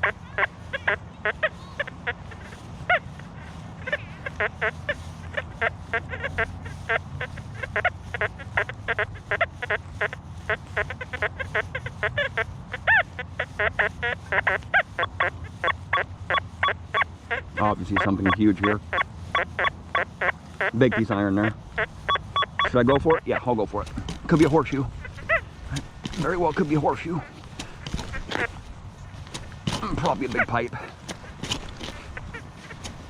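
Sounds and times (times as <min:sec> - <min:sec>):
metal detector beeps and chirps: 0:05.3 - 0:23.5.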